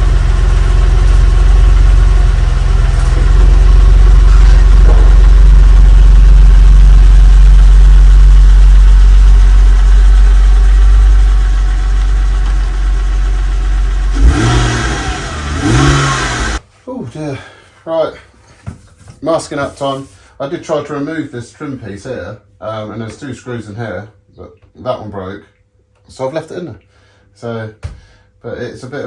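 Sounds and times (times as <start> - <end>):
car engine idling: 0.0 - 16.6.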